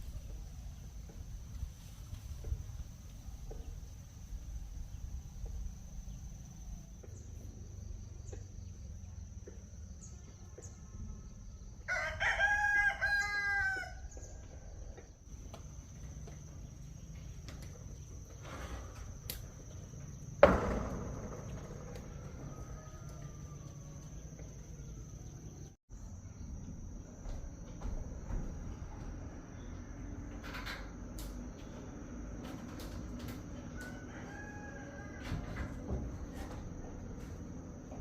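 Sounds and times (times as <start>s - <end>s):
rooster crowing: 11.6s - 14.7s, 21.8s - 25.7s, 33.6s - 37.0s.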